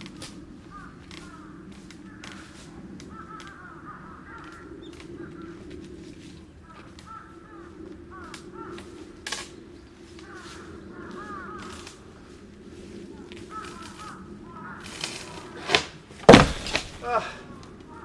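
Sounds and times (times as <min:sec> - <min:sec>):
crows cawing: 0:00.6 - 0:05.6, 0:06.6 - 0:09.2, 0:10.2 - 0:12.3, 0:13.4 - 0:15.6, 0:16.3 - 0:18.0
loud thump: 0:16.3 - 0:17.2.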